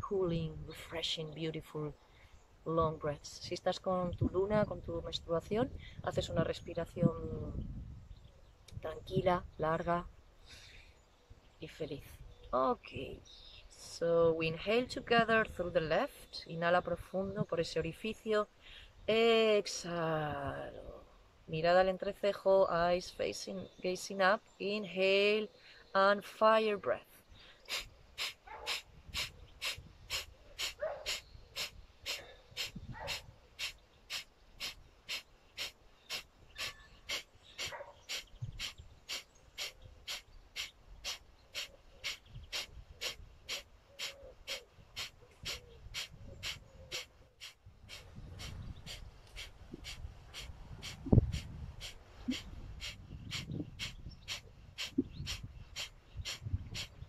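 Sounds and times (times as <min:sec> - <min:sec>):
rapid forceful nasal exhalations: 0:27.4 - 0:57.0.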